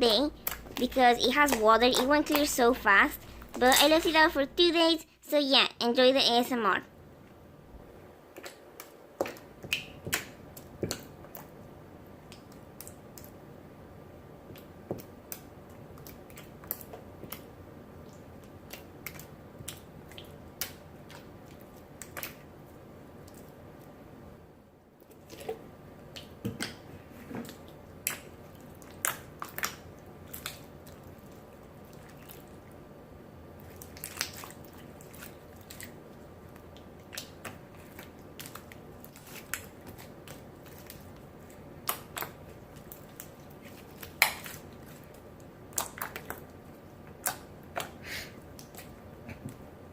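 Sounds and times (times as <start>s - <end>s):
slime squished by hand: 33.6s - 36.0s, 36.6s - 49.0s.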